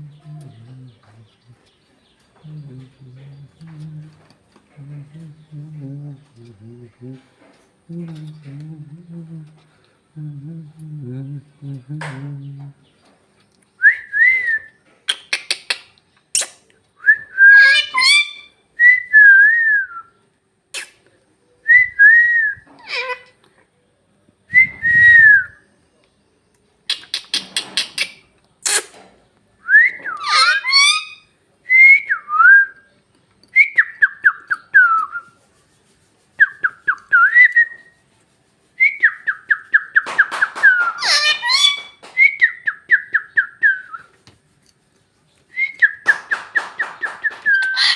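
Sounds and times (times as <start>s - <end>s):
parrot whistling and chattering: 15.1s - 16.6s, 26.9s - 28.9s, 39.0s - 44.0s, 45.7s - 47.9s.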